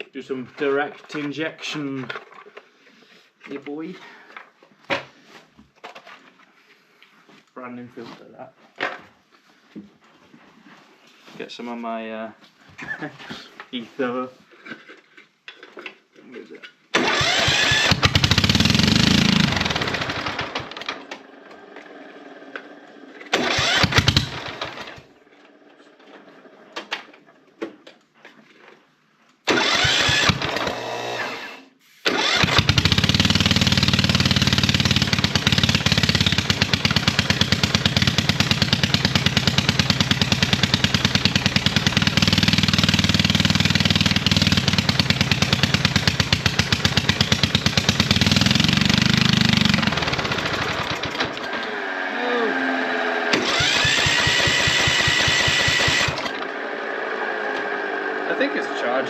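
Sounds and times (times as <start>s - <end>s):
ride-on lawn mower engine starting: 16.9s - 27.3s, 29.4s - 59.0s.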